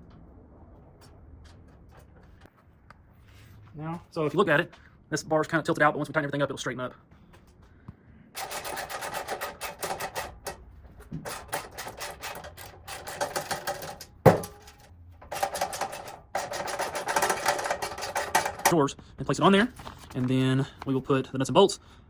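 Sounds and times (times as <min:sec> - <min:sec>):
sharp metal knock: 0:14.2 - 0:14.7.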